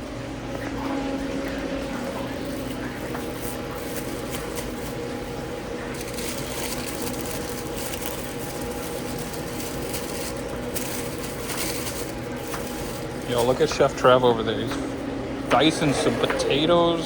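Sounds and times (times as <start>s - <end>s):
kitchen equipment humming: 0.0s - 17.0s
kitchen clicks and clatters: 5.9s - 13.9s.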